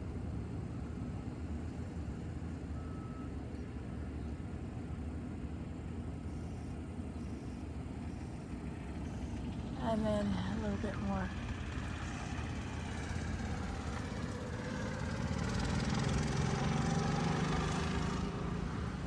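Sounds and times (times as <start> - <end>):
outdoor background rumble: 0.0 - 19.0
faint brief tone: 2.7 - 3.6.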